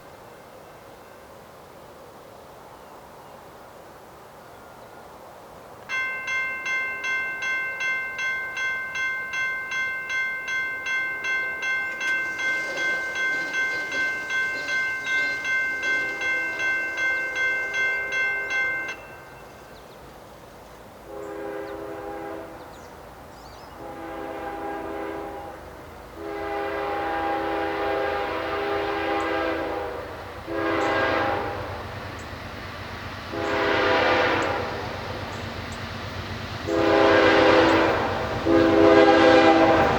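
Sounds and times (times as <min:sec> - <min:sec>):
crossing bell ringing: 0:05.9 - 0:20.1, 0:33.6 - 0:39.9
locomotive horn blasts: 0:21.1 - 0:22.8, 0:23.7 - 0:31.9, 0:33.3 - 0:35.0, 0:36.7 - 0:39.9.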